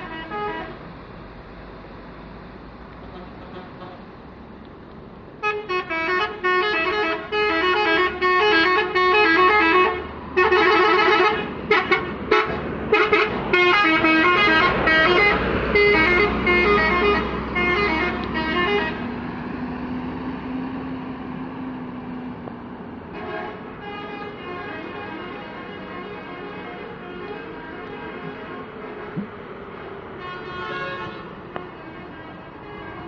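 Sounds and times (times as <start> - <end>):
musical bus air horn melody: 0.0 - 0.8, 5.4 - 19.1, 23.1 - 33.0.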